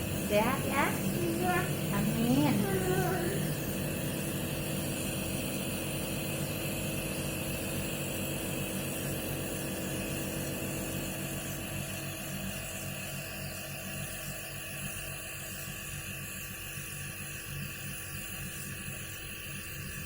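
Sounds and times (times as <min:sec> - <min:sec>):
air compressor humming: 0:00.0 - 0:16.0.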